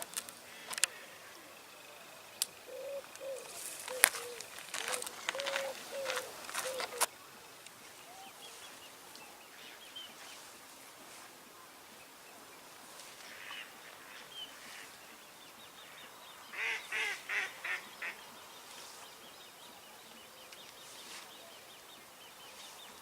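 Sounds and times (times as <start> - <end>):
faint bird chirps: 0.5 - 10.6.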